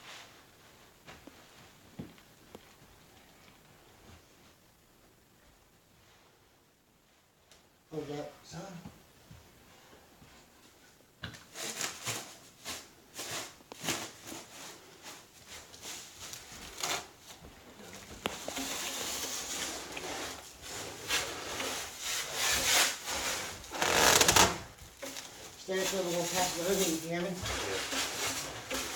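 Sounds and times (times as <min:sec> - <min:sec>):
cabinet scraping and rubbing: 0:18.2 - 0:28.9.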